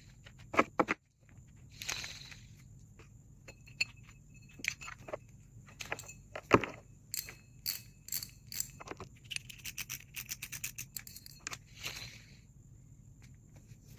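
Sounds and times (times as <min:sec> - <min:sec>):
fishing reel parts clicking: 0:07.1 - 0:11.6.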